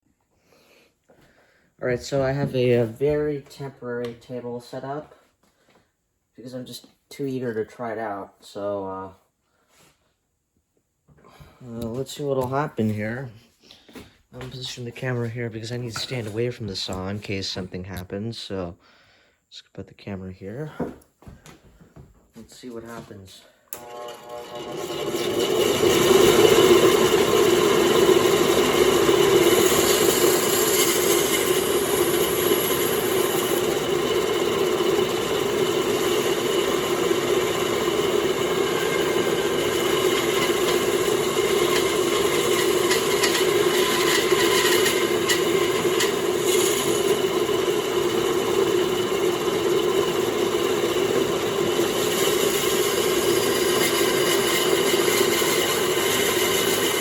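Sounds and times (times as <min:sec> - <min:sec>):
bandsaw humming: 0:23.7 - 0:57.0
bandsaw blade cutting: 0:23.8 - 0:57.0.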